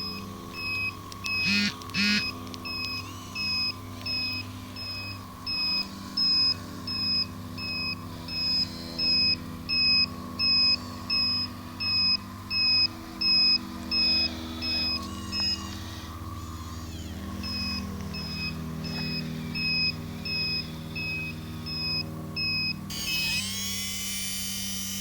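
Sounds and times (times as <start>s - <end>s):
model engine hum: 0.0s - 25.0s
reversing alarm beeping: 0.0s - 25.0s.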